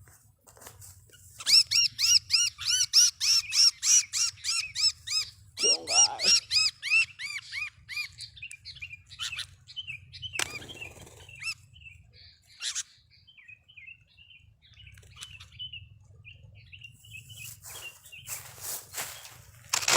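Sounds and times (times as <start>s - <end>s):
birds chirping: 1.1s - 19.9s
wings flapping: 10.4s - 11.6s.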